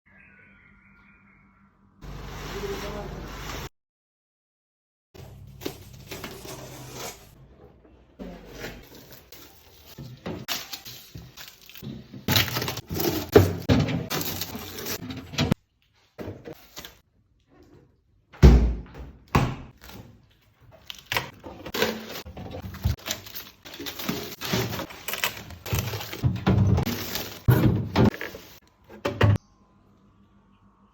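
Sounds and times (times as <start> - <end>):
items clinking in a refrigerator: 7.4 - 17.0, 19.7 - 29.4.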